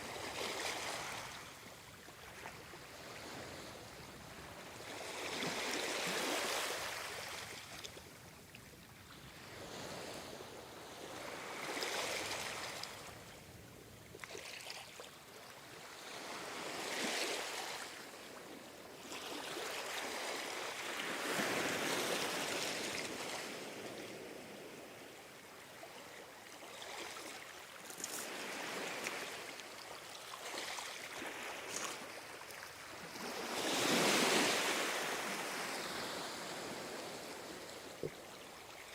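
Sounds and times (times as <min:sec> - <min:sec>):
ocean waves breaking on shore: 0:02.4 - 0:07.8, 0:15.6 - 0:38.9.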